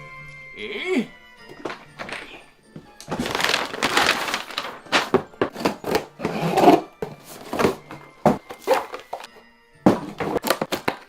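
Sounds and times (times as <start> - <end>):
crunching rustling noise: 3.0 - 7.8.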